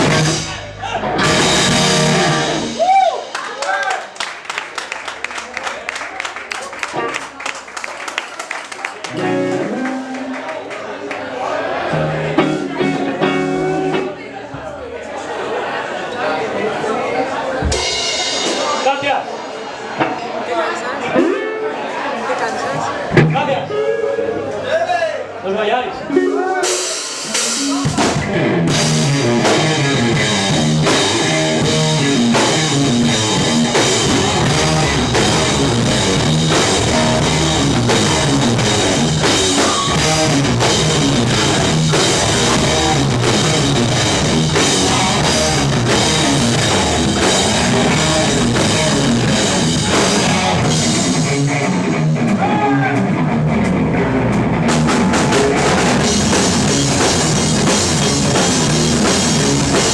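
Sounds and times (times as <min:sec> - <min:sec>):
drums and cymbals: 0:00.0 - 0:03.4, 0:17.6 - 0:19.7, 0:26.6 - 0:59.9
rock band playing live: 0:00.0 - 0:03.6, 0:06.7 - 0:07.6, 0:09.0 - 0:10.8, 0:11.8 - 0:14.2, 0:17.6 - 0:20.3, 0:22.2 - 0:23.9, 0:26.3 - 0:59.9.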